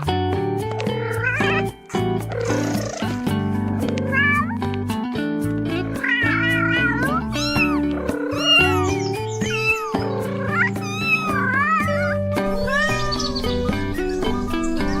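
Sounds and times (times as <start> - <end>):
cat meowing: 0.8 - 3.1, 4.0 - 4.6, 5.8 - 14.6.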